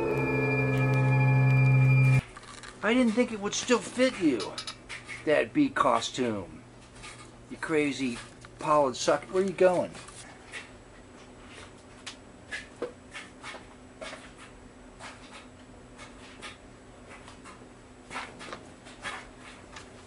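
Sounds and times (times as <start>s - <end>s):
steady low hum: 0.0s - 2.2s.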